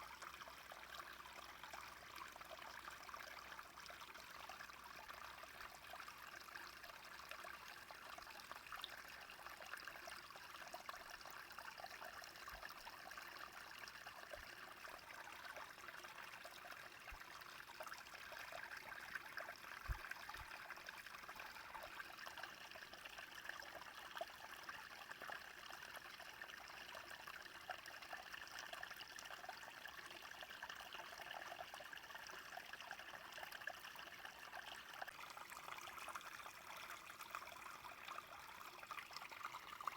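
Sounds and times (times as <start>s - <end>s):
brook trickling over stones: 0.0s - 39.9s.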